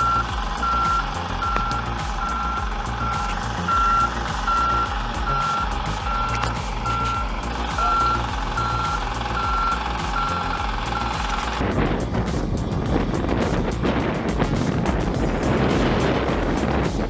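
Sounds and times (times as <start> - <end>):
reversing alarm beeping: 0.0 - 3.2, 3.8 - 4.8, 7.8 - 10.3
low rumble: 0.0 - 17.0.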